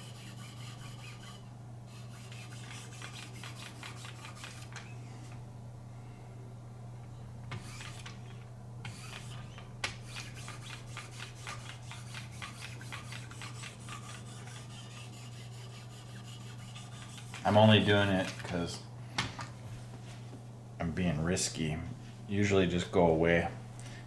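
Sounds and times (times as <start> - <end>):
blade scraping on sharpening stone: 0.0 - 4.6, 8.9 - 17.4
steady low hum: 0.0 - 24.0.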